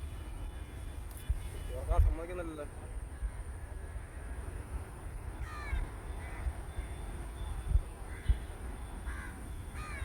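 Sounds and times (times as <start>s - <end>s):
crow cawing: 5.4s - 6.5s, 9.1s - 10.0s.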